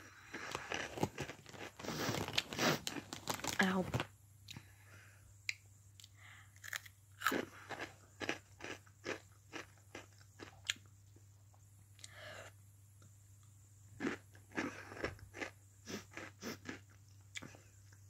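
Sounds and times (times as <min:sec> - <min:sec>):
chewing crunchy snack: 0:00.1 - 0:03.6, 0:06.0 - 0:10.9, 0:14.0 - 0:18.0.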